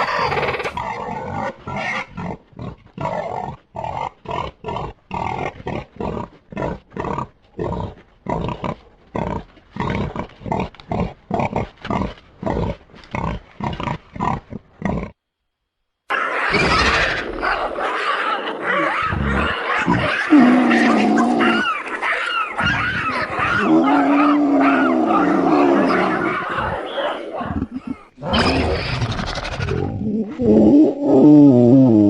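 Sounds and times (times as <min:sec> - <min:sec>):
monster roars: 0:18.7 - 0:21.7, 0:22.6 - 0:26.5.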